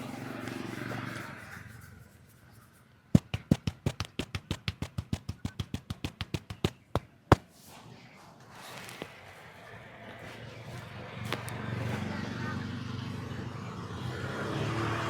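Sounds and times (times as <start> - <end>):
hands slapping body: 3.2 - 7.5.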